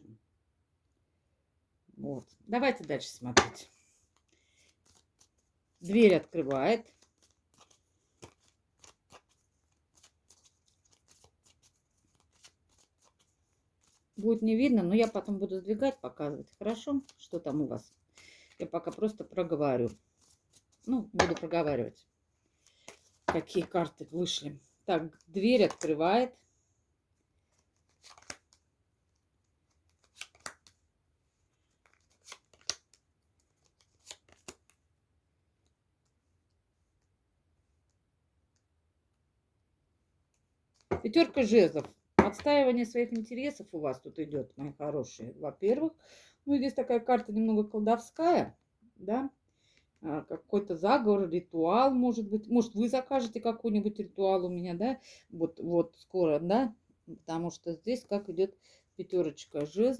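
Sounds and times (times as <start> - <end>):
cards being laid on a table: 3.4 - 3.7, 21.2 - 21.5, 40.9 - 41.2
cards sliding: 27.5 - 28.6, 29.7 - 30.8, 31.7 - 33.0.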